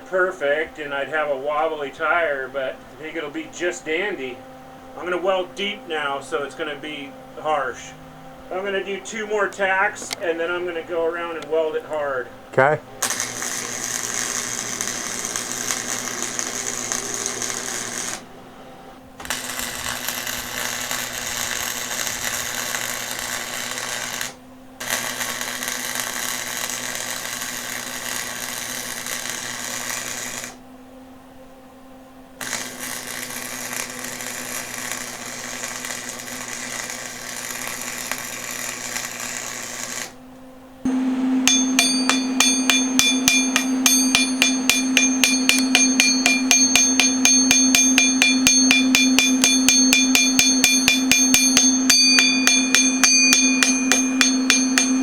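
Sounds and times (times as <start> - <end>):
welder hum: 12.6 - 30.6, 32.4 - 40.2, 40.8 - 55.0
arc welding crackling sizzle: 13.0 - 18.3, 19.2 - 30.6, 32.4 - 40.2, 40.8 - 55.0.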